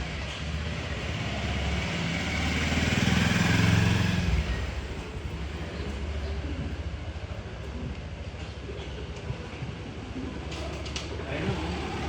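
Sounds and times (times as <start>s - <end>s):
vehicle engine passing: 0.0s - 6.6s
street traffic: 0.0s - 12.0s.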